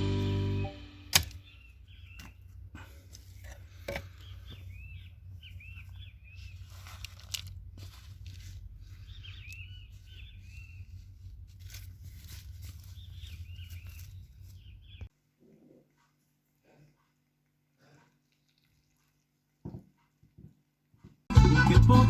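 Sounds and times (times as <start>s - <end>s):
small birds chirping: 0.0s - 15.1s
sharp clicks: 1.0s - 1.4s.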